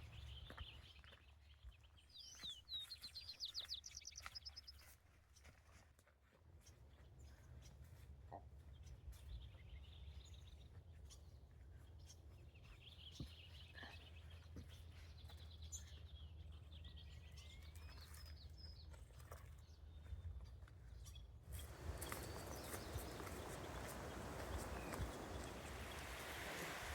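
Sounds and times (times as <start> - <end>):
faint birdsong chirps: 0.0 - 4.9, 21.0 - 26.9.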